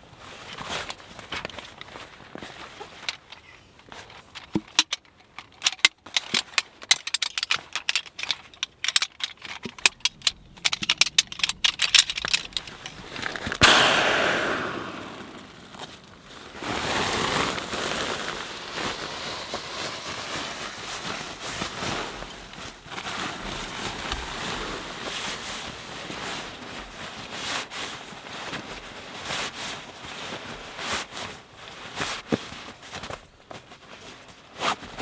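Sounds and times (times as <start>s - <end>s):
sharp clicks and knocks: 4.4s - 15.9s
wind noise: 10.0s - 16.0s.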